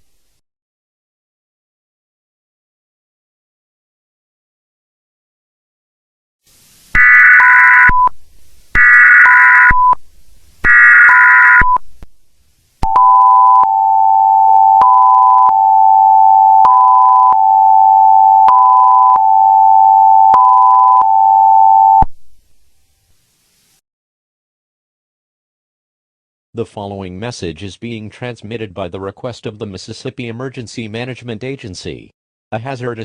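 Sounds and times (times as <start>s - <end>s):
two-tone attention signal: 7.0s - 8.1s, 8.8s - 10.0s, 10.7s - 11.8s, 12.8s - 22.0s.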